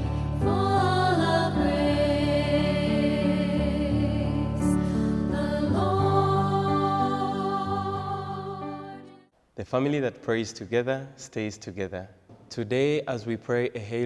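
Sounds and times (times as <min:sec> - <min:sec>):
choir-like singing voices: 0:00.0 - 0:09.3
slow music of held chords: 0:00.0 - 0:09.3.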